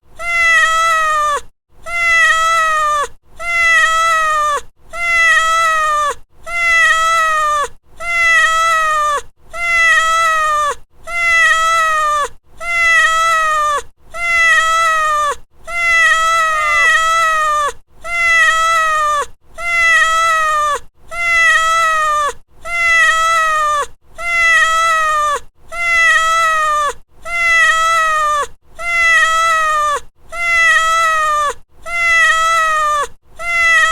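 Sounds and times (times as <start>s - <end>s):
cat meowing: 15.8s - 17.7s.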